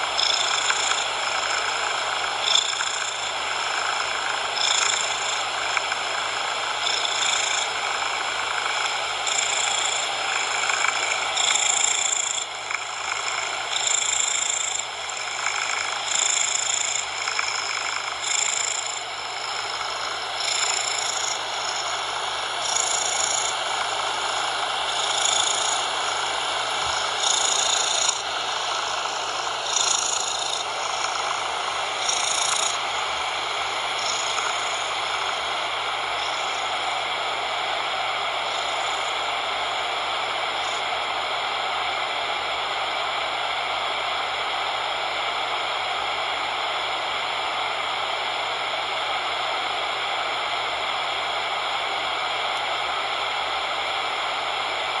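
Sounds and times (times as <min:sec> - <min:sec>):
cat purring: 0:00.0 - 0:37.1.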